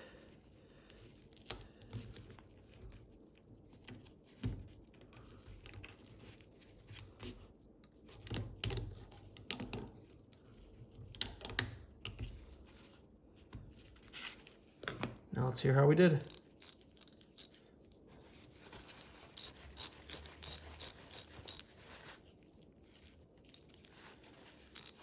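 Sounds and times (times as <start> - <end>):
small metallic clicks and scrapes: 16.2 - 17.8, 18.7 - 25.0.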